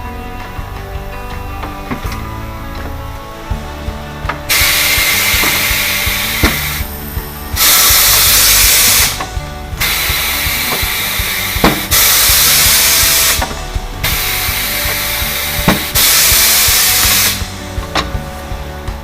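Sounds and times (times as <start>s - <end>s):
background music with a beat: 0.0s - 19.0s
compressed air hissing: 4.5s - 18.1s.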